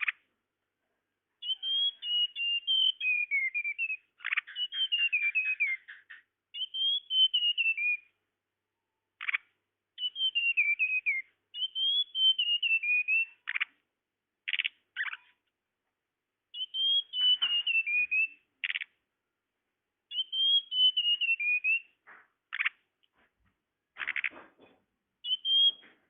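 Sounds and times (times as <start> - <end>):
bird twittering phrases: 0.0 - 0.3, 1.4 - 8.2, 9.2 - 13.8, 14.4 - 15.4, 16.5 - 19.0, 20.1 - 22.9, 24.0 - 24.6, 25.2 - 26.0.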